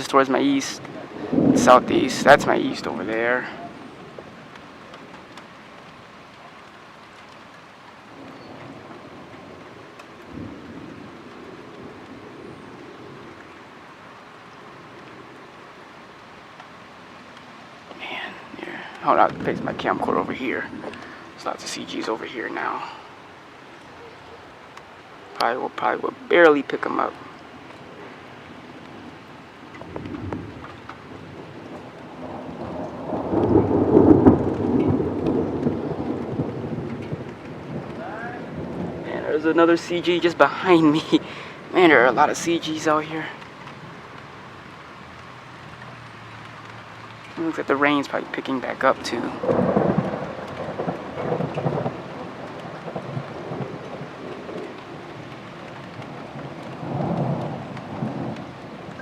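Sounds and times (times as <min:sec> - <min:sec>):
thunder rumbling: 0:00.0 - 0:16.8, 0:17.8 - 0:45.0, 0:45.8 - 0:59.0
steady rain: 0:00.0 - 0:59.0.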